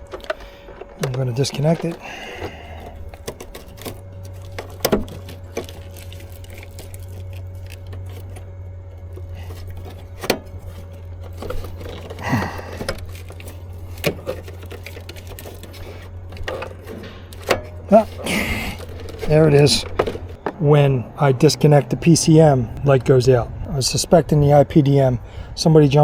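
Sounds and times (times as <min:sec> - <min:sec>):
wiring connector clicks and rattles: 0:00.0 - 0:20.6
steady low hum: 0:00.0 - 0:26.0.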